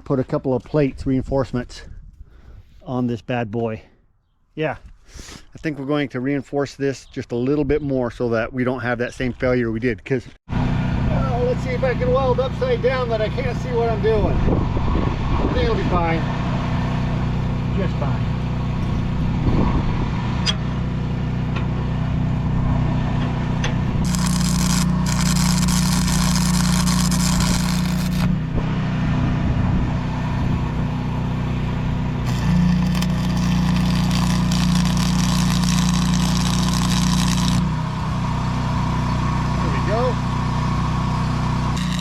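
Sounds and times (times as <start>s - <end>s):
constant low hum: 17.0s - 39.2s
arc welding crackle: 24.0s - 28.4s, 32.2s - 37.7s, 41.8s - 42.0s.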